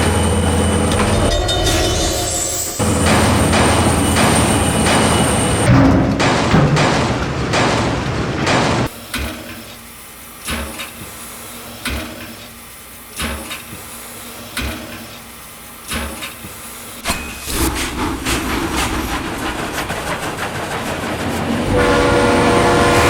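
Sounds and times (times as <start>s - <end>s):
regular knocking: 3.0s - 8.9s
loud rushing noise: 17.0s - 23.0s.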